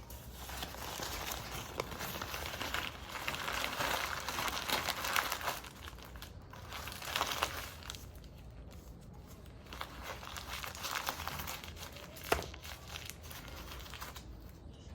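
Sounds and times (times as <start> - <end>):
packaging crinkling: 0.0 - 14.9.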